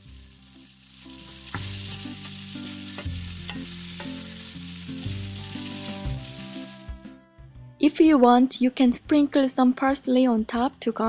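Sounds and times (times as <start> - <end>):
food sizzling in a pan: 0.0 - 7.2
utensil tapping pan: 1.2 - 6.3.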